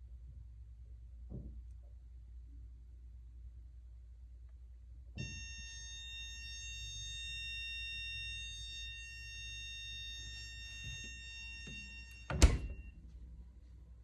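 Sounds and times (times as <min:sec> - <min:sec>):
loud thump: 0:01.3 - 0:01.6
fridge door alarm buzzer: 0:05.2 - 0:13.0.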